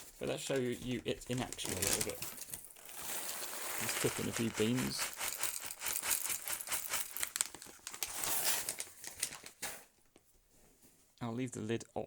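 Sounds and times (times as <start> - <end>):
coffee beans rattling into grinder: 1.6 - 9.4.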